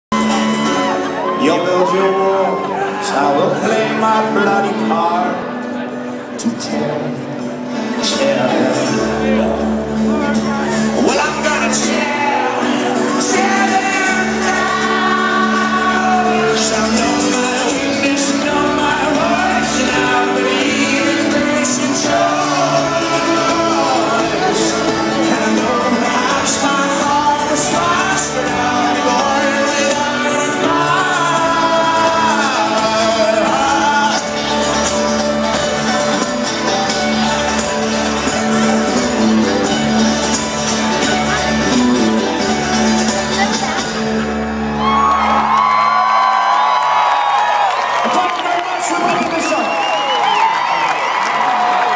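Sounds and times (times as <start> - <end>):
person singing: 0.1 - 45.4
folk-rock band playing live: 0.1 - 46.7.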